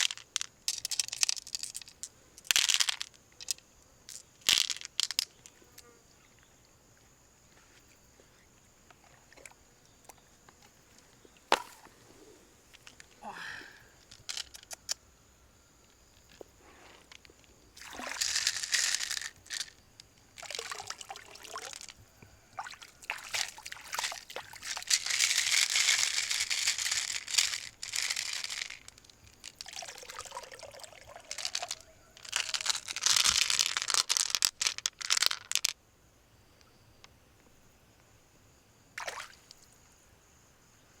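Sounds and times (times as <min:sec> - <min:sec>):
water pouring and splashing: 0:17.8 - 0:19.3, 0:20.4 - 0:22.0, 0:22.6 - 0:26.3, 0:29.6 - 0:34.0.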